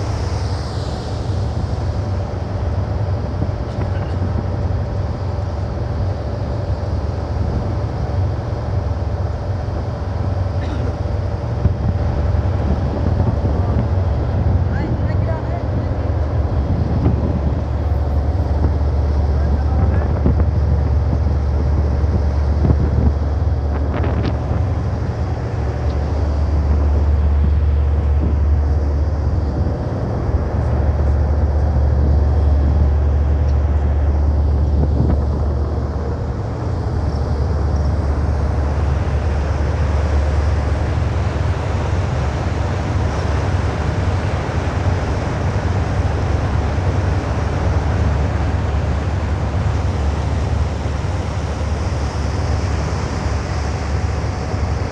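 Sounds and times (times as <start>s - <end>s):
boat engine droning: 0.0s - 54.9s
wind buffeting microphone: 0.0s - 54.9s.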